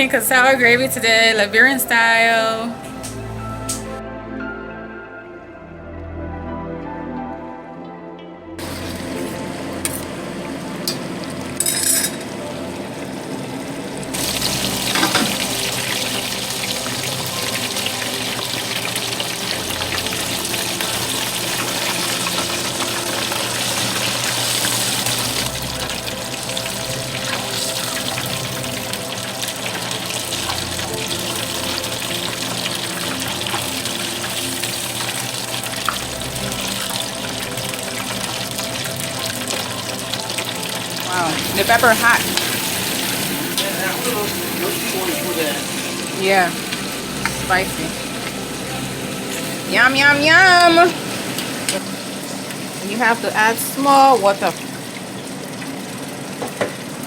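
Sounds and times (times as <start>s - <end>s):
background music: 0.0s - 55.8s
food sizzling in hot oil: 8.6s - 57.0s.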